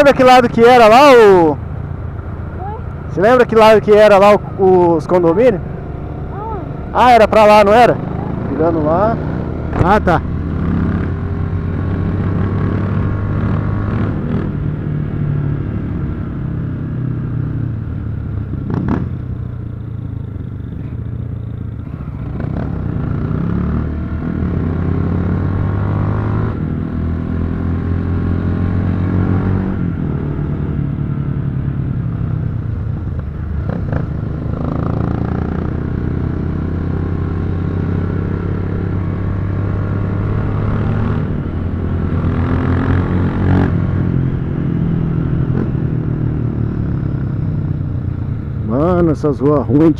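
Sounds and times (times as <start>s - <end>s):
motorcycle engine revving: 0.0s - 49.9s.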